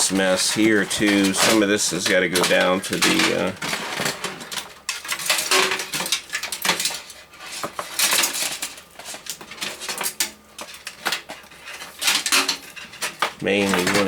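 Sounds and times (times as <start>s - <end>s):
cables and parts rustling and clicking: 0.0s - 14.0s.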